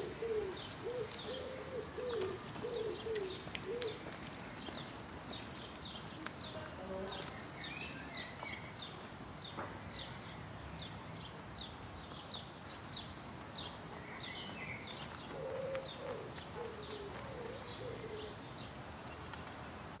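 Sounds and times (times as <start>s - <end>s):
bird cooing: 0.0s - 4.1s, 15.3s - 18.4s
small birds chirping: 0.0s - 19.9s
distant traffic rumble: 0.0s - 20.0s.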